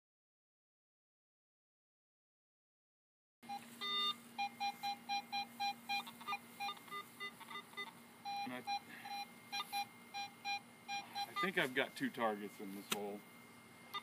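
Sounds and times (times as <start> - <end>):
faint steady hum: 3.4 - 14.0
metal detector beeps: 3.5 - 13.2.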